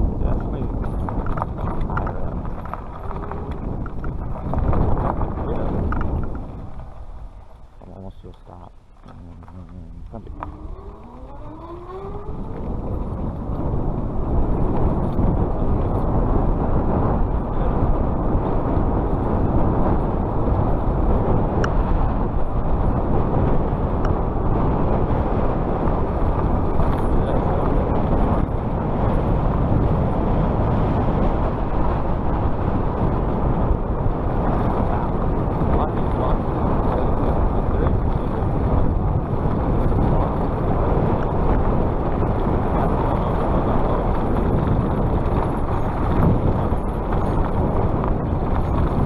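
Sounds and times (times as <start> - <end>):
wind and riding noise: 0.0 - 49.0
electric motor whining: 2.4 - 6.6, 9.1 - 14.6.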